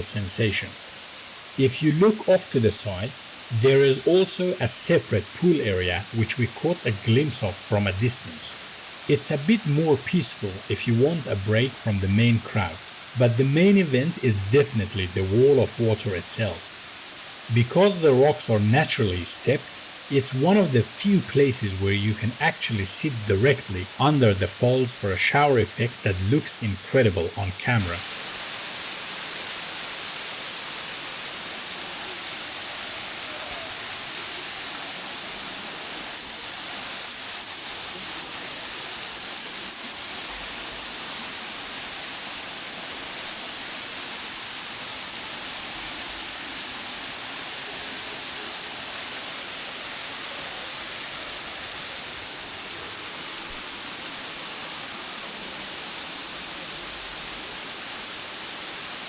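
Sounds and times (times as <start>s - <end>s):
waterfall rushing hiss: 0.0s - 59.0s.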